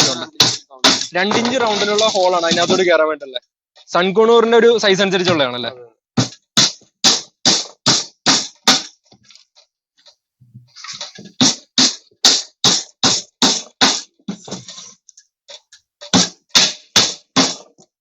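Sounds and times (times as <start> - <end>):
hammer driving nails into plywood: 6.2 - 9.0, 16.0 - 17.9.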